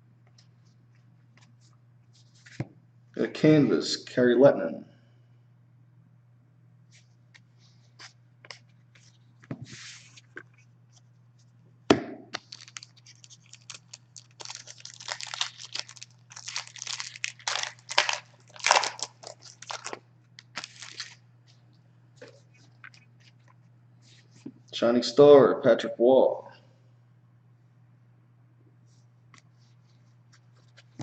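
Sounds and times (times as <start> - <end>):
wrapper crinkling and tearing: 12.4 - 21.2.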